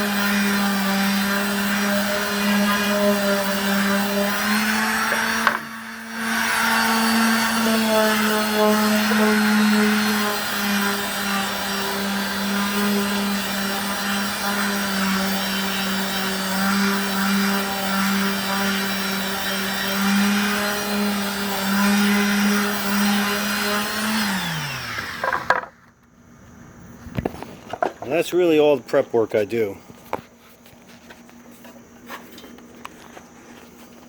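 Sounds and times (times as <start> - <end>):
electric sander on wood: 0.0 - 25.7.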